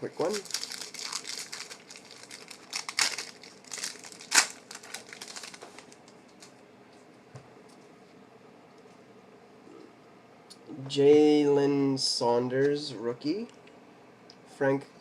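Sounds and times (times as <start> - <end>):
wrapper crinkling and tearing: 0.2 - 6.6
sharp wrapper snap: 2.8 - 6.5.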